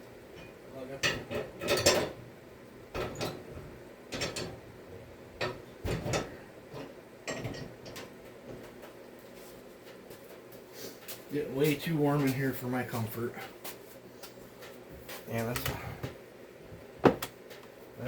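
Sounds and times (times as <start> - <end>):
metal parts clicking and clunking: 0.4 - 2.2, 4.1 - 4.6.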